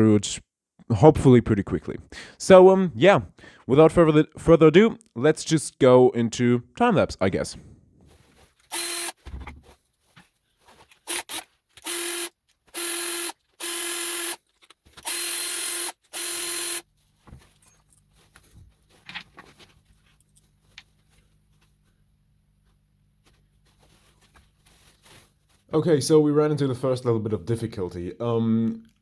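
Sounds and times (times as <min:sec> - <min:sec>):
power drill whining: 0:08.7 - 0:09.2, 0:11.0 - 0:14.4, 0:15.0 - 0:16.8
faint clicks of handling parts: 0:09.4 - 0:11.1, 0:14.4 - 0:15.1, 0:17.0 - 0:22.0.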